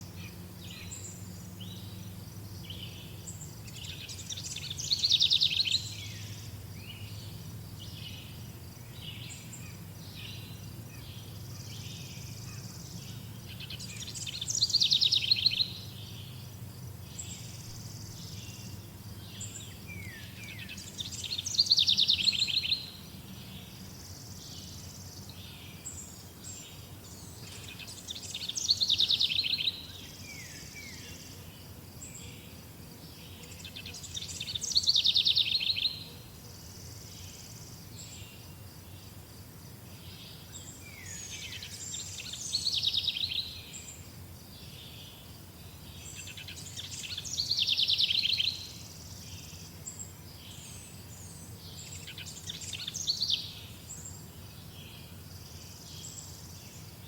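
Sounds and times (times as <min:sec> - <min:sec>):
soft bird chirps: 0:00.1 - 0:39.2
bird trilling song: 0:00.2 - 0:16.4, 0:17.1 - 0:23.6, 0:24.2 - 0:31.3, 0:33.3 - 0:36.1, 0:40.0 - 0:44.0, 0:45.9 - 0:54.2.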